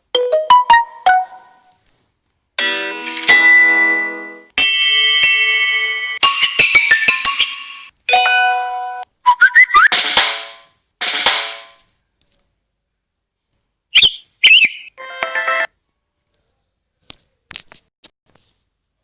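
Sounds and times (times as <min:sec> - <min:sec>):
phone ringtone chirps: 0:14.4 - 0:15.7.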